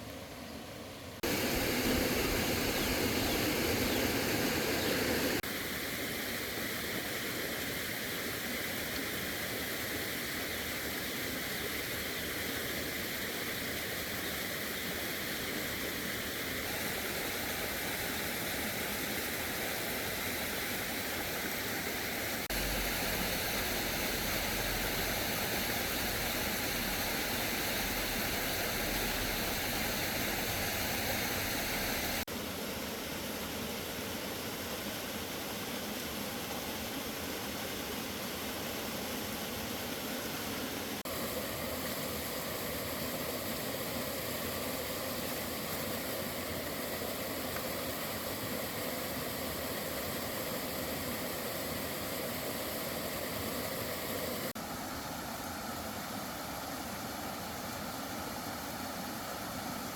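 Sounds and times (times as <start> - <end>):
steady rushing outdoor noise: 1.2 - 8.7, 13.8 - 32.4.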